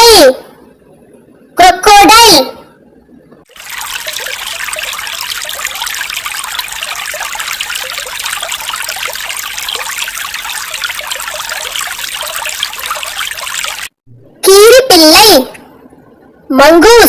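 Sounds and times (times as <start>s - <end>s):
water trickling and splashing: 3.5s - 14.0s.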